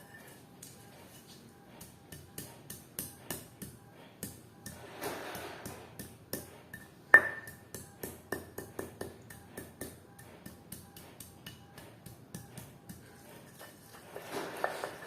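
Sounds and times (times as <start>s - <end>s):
pestle pounding in a mortar: 1.8s - 4.8s, 5.6s - 14.0s.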